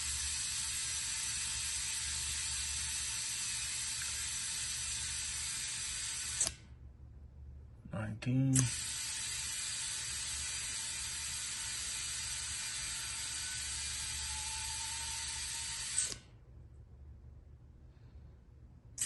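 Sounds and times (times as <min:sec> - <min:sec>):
tire air pump running: 0:00.0 - 0:06.6, 0:08.6 - 0:16.3.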